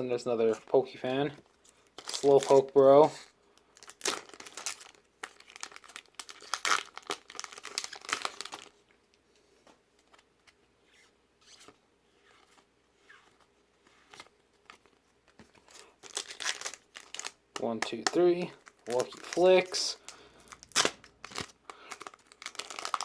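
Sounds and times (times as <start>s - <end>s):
foil wrapper crinkling: 1.6s - 8.9s, 15.6s - 23.0s.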